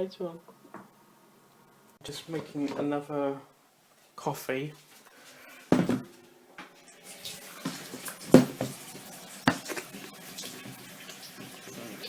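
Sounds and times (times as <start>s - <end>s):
dishes knocking: 5.7s - 6.7s, 7.6s - 10.0s
water running from a tap: 6.8s - 12.0s.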